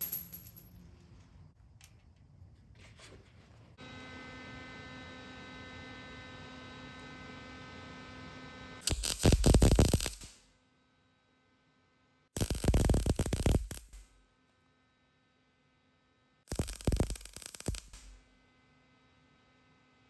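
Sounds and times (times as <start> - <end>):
welder humming: 3.8 - 10.4, 12.4 - 14.1, 16.5 - 18.3
welding arc crackle: 8.8 - 10.5, 12.4 - 14.2, 16.5 - 18.2.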